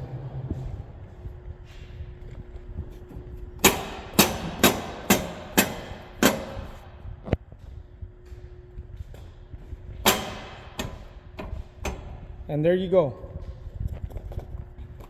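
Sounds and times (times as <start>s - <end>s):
hammer striking steel: 3.6s - 7.0s, 10.0s - 12.2s.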